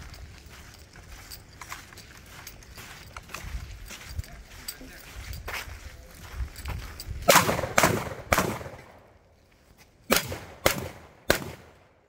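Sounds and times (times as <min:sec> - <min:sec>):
shotgun shots: 0:07.2 - 0:09.1, 0:10.1 - 0:12.0.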